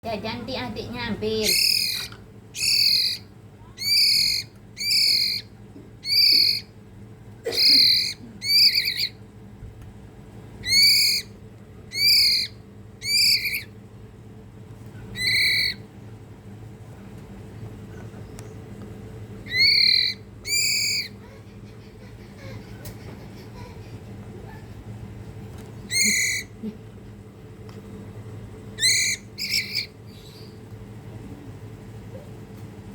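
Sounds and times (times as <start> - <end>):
songbird begging calls: 1.2 - 6.7, 7.5 - 9.2, 10.6 - 11.3, 11.9 - 13.8, 15.2 - 15.8, 19.4 - 21.2, 25.9 - 26.5, 28.8 - 30.6.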